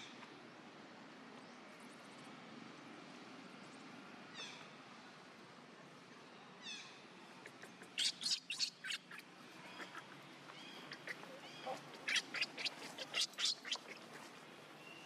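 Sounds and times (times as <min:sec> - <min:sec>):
high-pitched animal calls: 0:08.0 - 0:09.2, 0:10.8 - 0:14.1.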